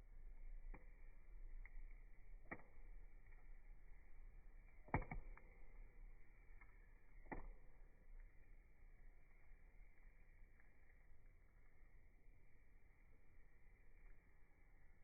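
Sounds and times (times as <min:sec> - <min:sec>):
fire popping: 0:00.0 - 0:15.0
wood fire crackling: 0:00.0 - 0:15.0.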